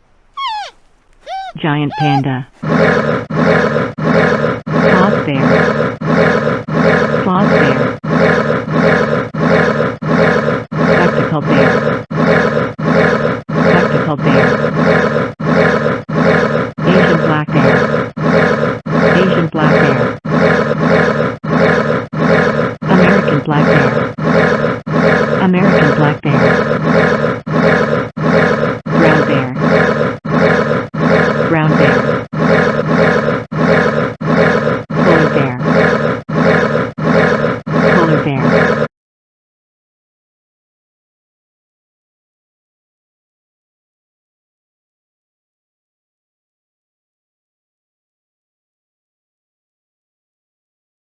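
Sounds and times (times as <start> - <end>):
bear growling and roaring: 0.0 - 38.9.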